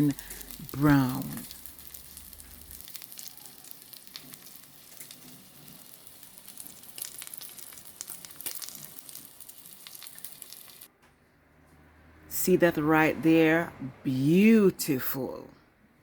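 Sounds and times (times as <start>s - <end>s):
fish sizzling in frying pan: 0.0s - 10.9s
oil popping: 0.0s - 10.9s.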